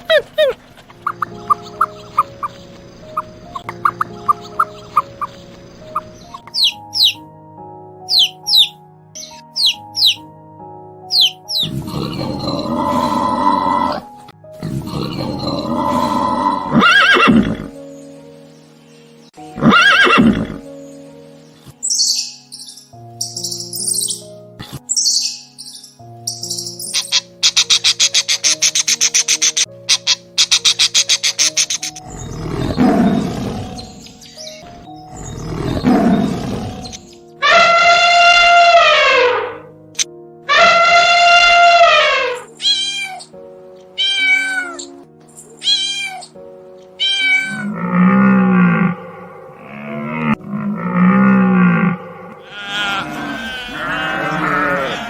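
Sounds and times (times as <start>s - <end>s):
background music: 0.0s - 55.0s
rapid chirping pulses: 0.4s - 7.2s
rough roaring calls: 11.6s - 17.8s, 32.0s - 39.7s, 40.5s - 42.5s, 47.1s - 55.0s
horse neighing: 14.6s - 17.8s, 19.6s - 20.6s, 47.0s - 55.0s
cat-like meow: 44.0s - 44.8s, 45.6s - 46.3s, 47.0s - 47.7s.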